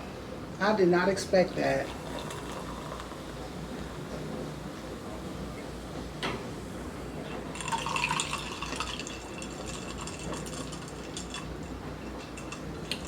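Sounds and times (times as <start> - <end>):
soda splashing into a glass: 7.5 - 11.5
ice clinking in a glass: 7.6 - 11.5.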